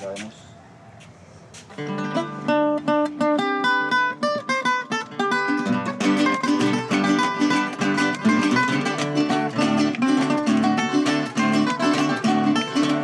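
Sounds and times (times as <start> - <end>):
acoustic plucked string instruments: 1.8 - 13.0.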